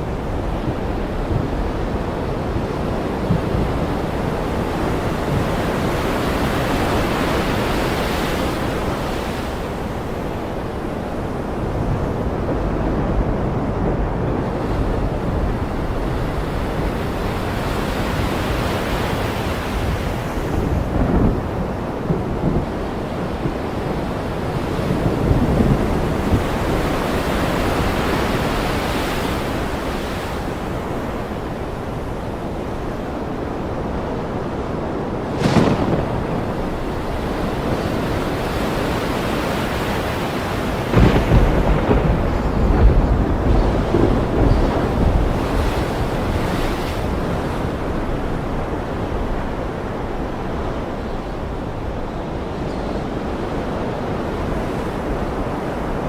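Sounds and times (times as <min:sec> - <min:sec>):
ocean surf washing: 0:00.0 - 0:56.0
thunder rumbles: 0:19.8 - 0:28.6, 0:35.1 - 0:38.9, 0:40.4 - 0:47.8.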